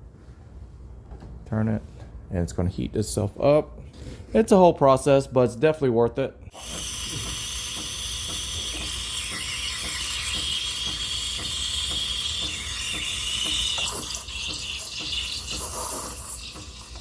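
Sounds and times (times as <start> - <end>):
steam wand hissing into milk: 6.5 - 17.0.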